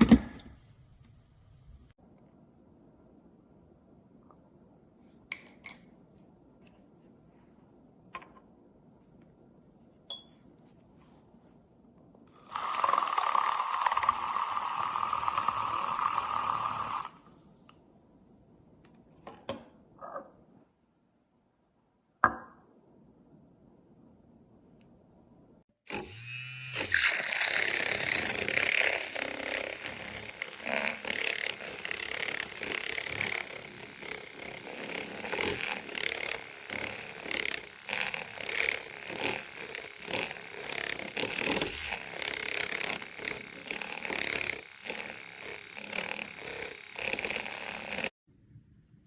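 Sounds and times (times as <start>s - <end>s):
milk frother whirring: 12.4s - 17.3s, 25.9s - 48.1s.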